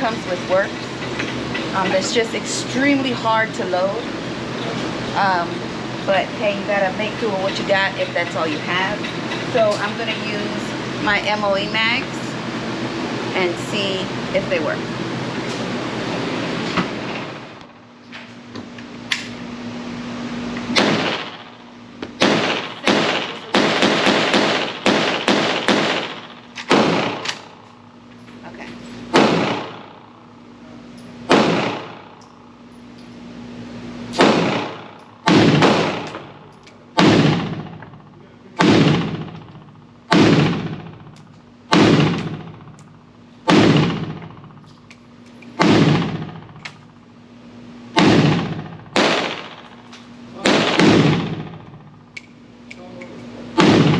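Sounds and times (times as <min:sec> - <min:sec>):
pistol gunshots with ringing tail: 0:20.7 - 0:21.6, 0:22.2 - 0:27.6, 0:29.1 - 0:30.1, 0:31.3 - 0:32.2, 0:34.2 - 0:38.0, 0:38.6 - 0:39.4, 0:40.1 - 0:41.1, 0:41.7 - 0:42.7, 0:43.4 - 0:44.6, 0:45.6 - 0:46.6, 0:47.9 - 0:49.8, 0:50.4 - 0:51.9, 0:53.6 - 0:53.9.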